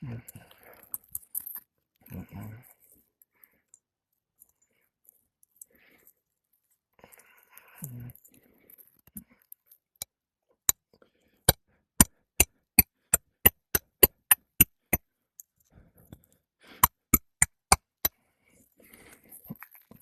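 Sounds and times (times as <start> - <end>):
hammer striking roofing nails: 13.2 - 14.8.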